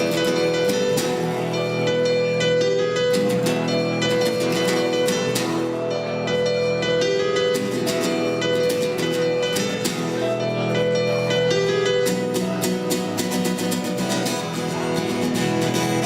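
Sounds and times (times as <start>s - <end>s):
held melody line: 0.0s - 16.0s
strummed acoustic guitar chords: 0.0s - 16.0s.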